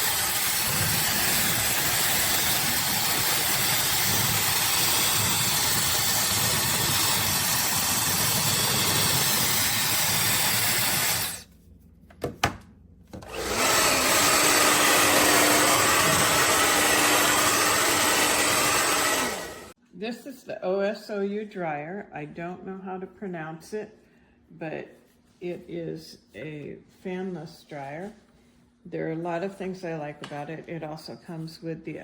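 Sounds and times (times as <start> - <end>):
hair dryer blowing: 0.0 - 11.4, 13.2 - 19.8.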